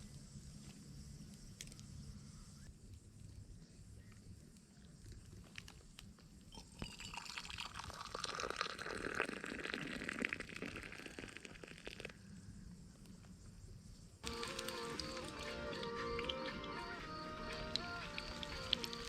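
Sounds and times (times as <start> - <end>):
water pouring and splashing: 6.6 - 12.1, 18.1 - 19.0
background music: 14.2 - 19.0.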